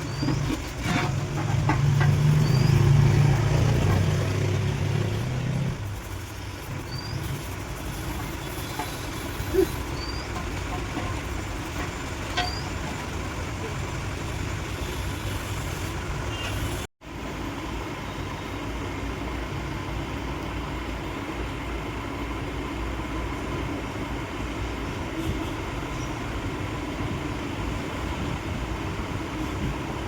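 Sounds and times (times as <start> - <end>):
low mechanical rumble: 0.0 - 29.8.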